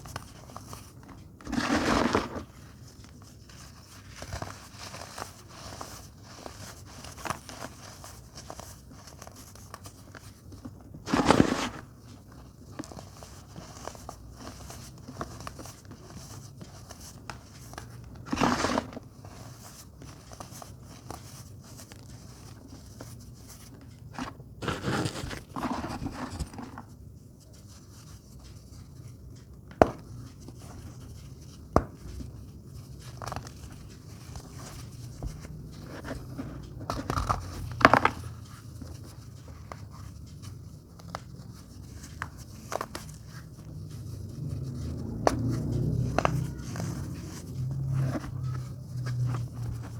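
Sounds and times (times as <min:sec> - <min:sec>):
fine crackling of crushed powder: 0:01.4 - 0:03.2.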